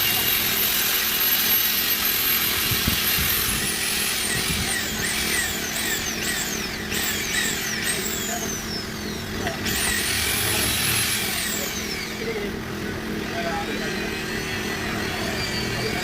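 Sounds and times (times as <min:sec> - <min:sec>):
handheld power tool running: 0:00.0 - 0:12.6.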